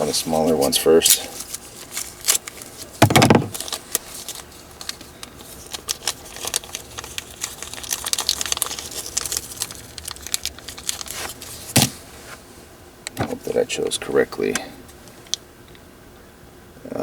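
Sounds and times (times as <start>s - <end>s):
packet rustling: 0.0s - 12.5s.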